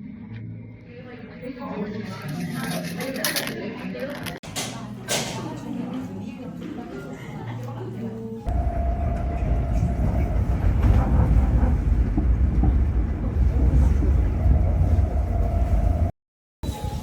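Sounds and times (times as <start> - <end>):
moving vehicle rumble: 8.5 - 16.1.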